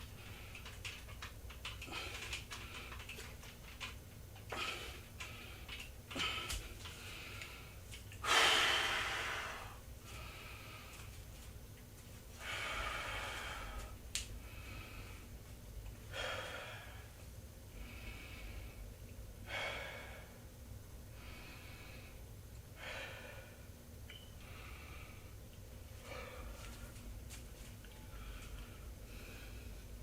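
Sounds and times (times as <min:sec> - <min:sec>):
person breathing hard: 0:01.7 - 0:03.3, 0:04.5 - 0:11.2, 0:12.4 - 0:15.4, 0:16.0 - 0:20.5, 0:21.1 - 0:23.8, 0:24.4 - 0:25.4, 0:26.0 - 0:27.0, 0:28.0 - 0:30.0.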